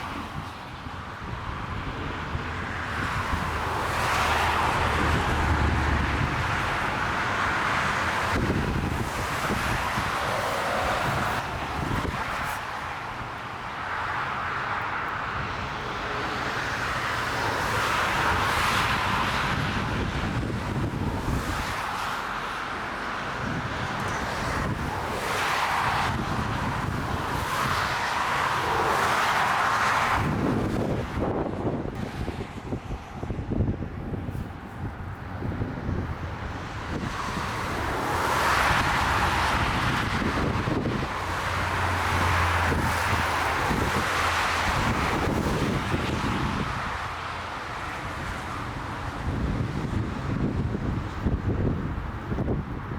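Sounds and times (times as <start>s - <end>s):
gusty storm wind: 0.0s - 52.9s
jet airliner engines: 0.0s - 52.9s
wind buffeting microphone: 0.0s - 52.9s.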